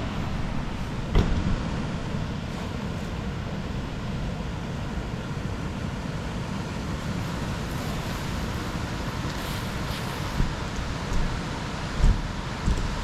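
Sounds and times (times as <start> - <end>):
rushing outdoor noise: 0.0 - 13.0.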